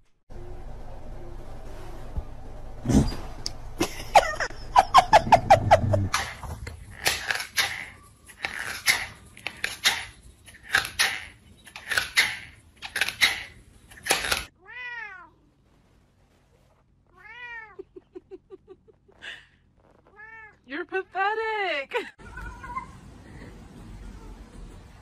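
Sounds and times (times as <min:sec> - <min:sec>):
cat meowing: 0:14.6 - 0:15.4, 0:20.1 - 0:20.6, 0:22.2 - 0:23.0.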